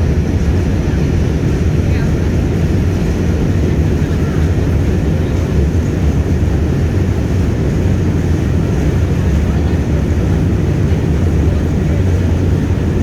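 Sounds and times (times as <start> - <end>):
faint voices: 0.0 - 13.0
subway train rumbling: 0.0 - 13.0.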